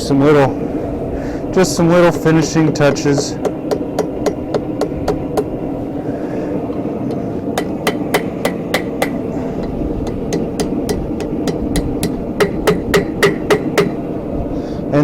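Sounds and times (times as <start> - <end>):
hammer striking hot steel on anvil: 1.6 - 5.6, 7.1 - 14.1.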